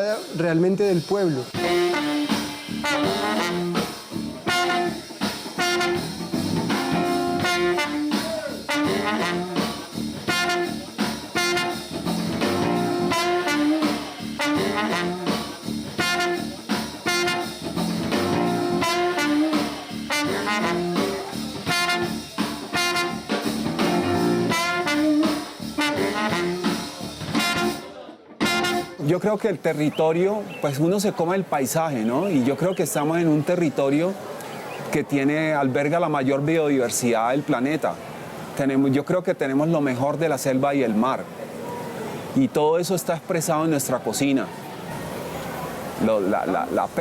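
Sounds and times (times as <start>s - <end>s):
jazz band playing: 1.3s - 29.2s.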